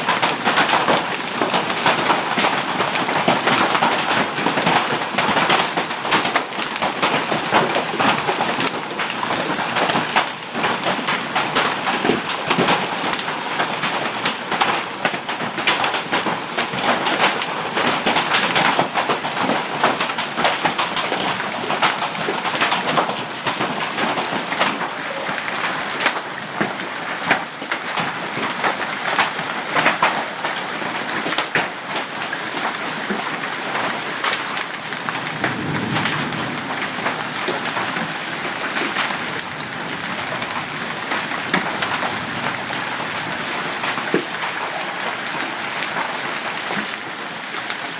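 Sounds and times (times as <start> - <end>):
hailstones striking: 0.0 - 47.9
heavy rain pelting: 0.0 - 47.9.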